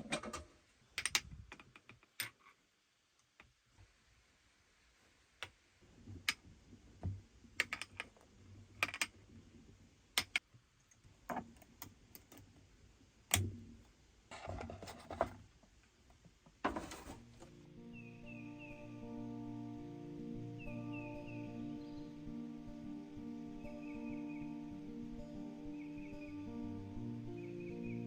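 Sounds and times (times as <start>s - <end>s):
small objects clicking and tapping: 7.6s - 9.2s, 10.2s - 12.5s
scraping rustles: 14.3s - 15.6s, 16.6s - 17.6s.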